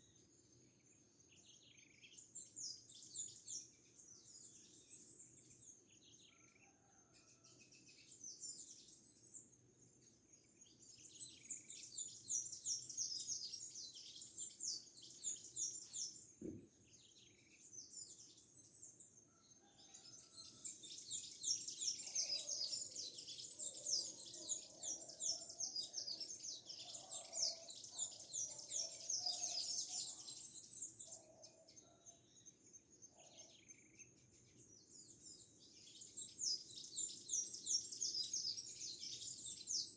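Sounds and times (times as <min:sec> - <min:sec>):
birds twittering: 0:21.0 - 0:39.9.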